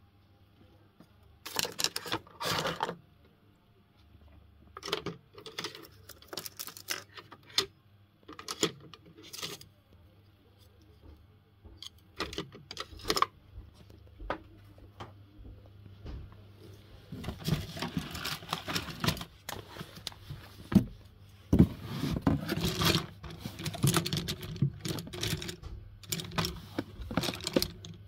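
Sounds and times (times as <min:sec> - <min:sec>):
faint low hum: 0:00.0 - 0:28.0
painting tools clicking and rattling: 0:22.5 - 0:28.0.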